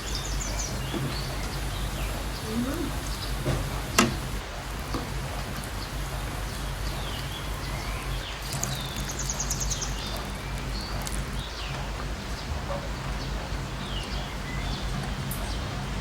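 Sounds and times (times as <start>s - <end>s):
high bird trill: 0.0s - 4.4s
birds chirping: 0.0s - 16.0s
steady low hum: 0.0s - 16.0s.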